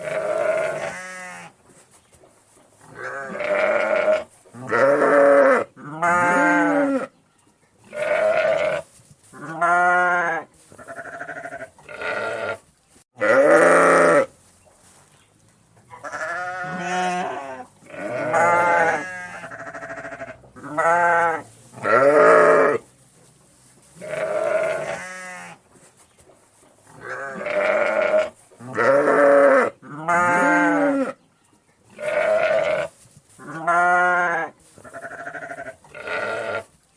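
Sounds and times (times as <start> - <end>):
sheep baaing: 0.0 - 1.5, 3.0 - 7.1, 7.9 - 8.8, 9.4 - 12.6, 13.2 - 14.3, 16.0 - 22.8, 24.0 - 25.6, 27.0 - 31.2, 32.0 - 36.7.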